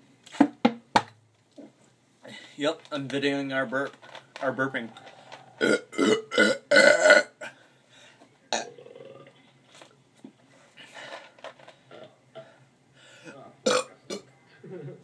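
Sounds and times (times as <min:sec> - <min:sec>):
loud burps: 0:05.6 - 0:07.6, 0:08.5 - 0:09.4, 0:13.6 - 0:14.3.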